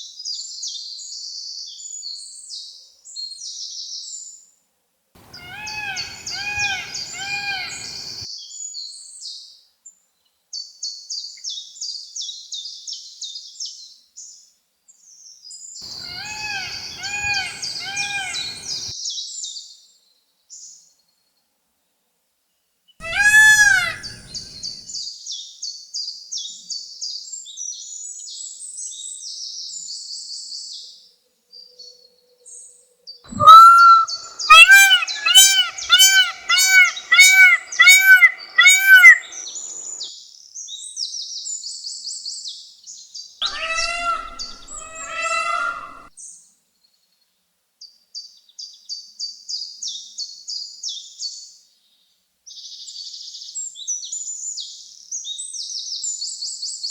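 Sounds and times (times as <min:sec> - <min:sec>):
peacock honking calls: 0:05.2 - 0:08.2, 0:15.9 - 0:18.9, 0:23.0 - 0:24.7, 0:33.3 - 0:40.0, 0:43.4 - 0:46.1
faint high fast chirping: 0:33.3 - 0:39.9, 0:43.5 - 0:46.1.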